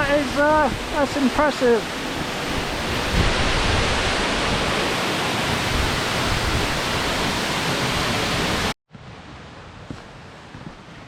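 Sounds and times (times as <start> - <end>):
wind on microphone: 0.0 - 8.7
waterfall roaring: 0.0 - 8.8.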